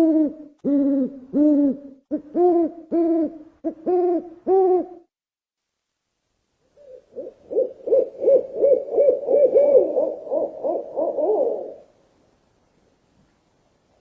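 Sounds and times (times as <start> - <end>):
owl hooting: 0.0 - 5.0, 6.7 - 11.9.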